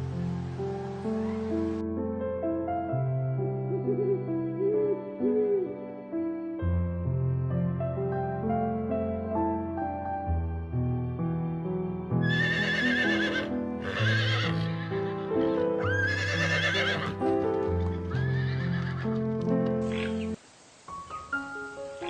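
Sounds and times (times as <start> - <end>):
soft piano-like background music: 0.0 - 22.0
wavering animal calls: 19.9 - 20.4.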